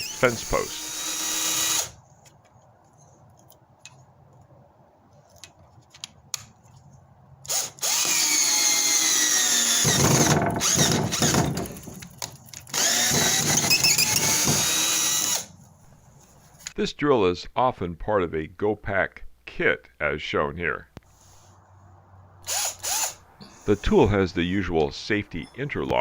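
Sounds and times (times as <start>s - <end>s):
cordless drill driving a screw: 0.0s - 2.0s, 7.5s - 12.0s, 12.7s - 15.5s, 22.4s - 23.2s.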